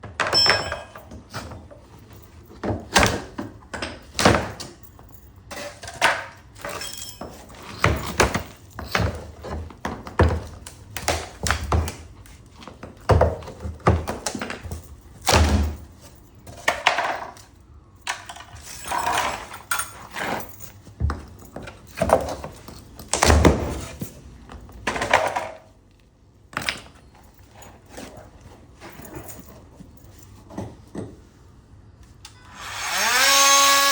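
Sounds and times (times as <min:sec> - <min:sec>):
floorboards thudding and cracking: 0:07.2 - 0:15.8, 0:20.9 - 0:25.6.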